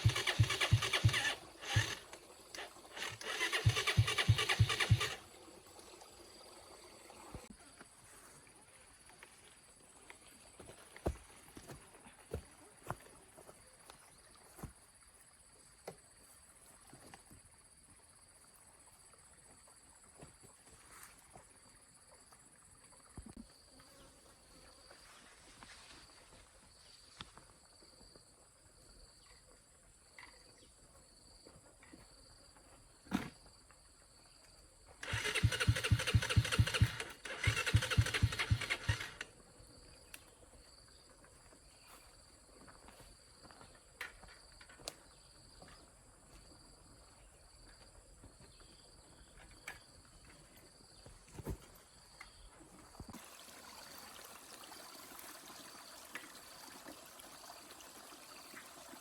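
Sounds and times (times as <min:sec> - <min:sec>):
small engine cranking: 0:00.0 - 0:05.3, 0:35.0 - 0:39.3.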